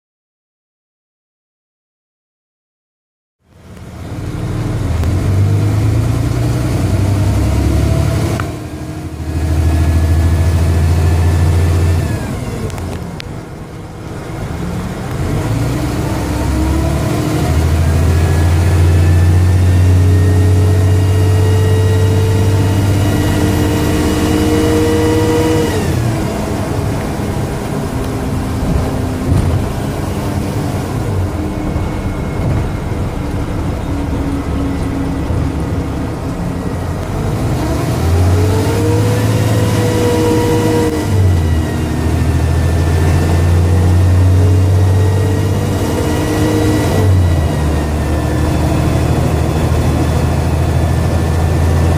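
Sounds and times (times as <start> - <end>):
bus engine accelerating: 3.5 - 51.9
turbo whine: 3.5 - 51.9.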